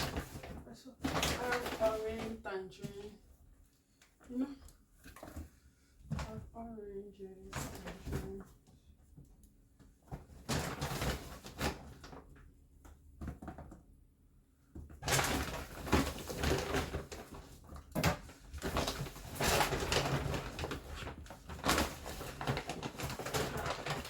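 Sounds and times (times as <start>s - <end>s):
bags rustling: 0.0s - 3.0s, 15.0s - 24.0s
knocks of groceries being moved: 0.0s - 3.1s, 9.9s - 12.4s, 13.0s - 13.8s, 14.7s - 24.0s.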